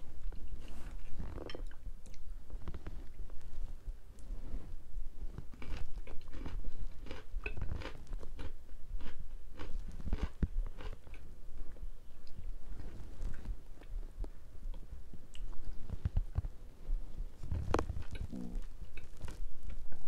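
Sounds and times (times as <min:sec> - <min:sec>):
person chewing food: 0:05.3 - 0:16.6, 0:17.4 - 0:20.0.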